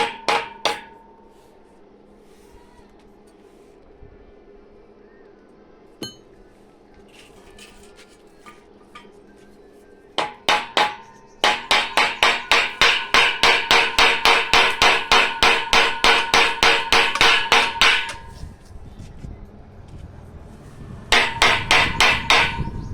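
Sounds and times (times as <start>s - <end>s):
hammer striking metal: 0.0s - 1.3s, 6.0s - 6.3s, 10.2s - 18.4s, 21.1s - 22.8s.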